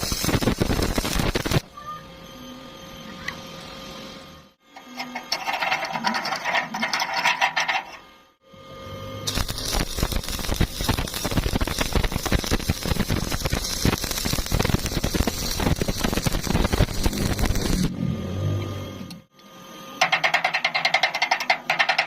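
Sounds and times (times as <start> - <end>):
welding arc crackling: 0.0 - 1.6, 9.3 - 18.0, 20.0 - 22.0.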